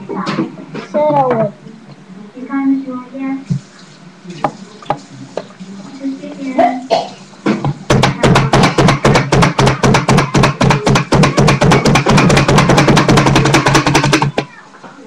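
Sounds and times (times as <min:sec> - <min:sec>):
rapid regular knocking: 0:07.5 - 0:14.6.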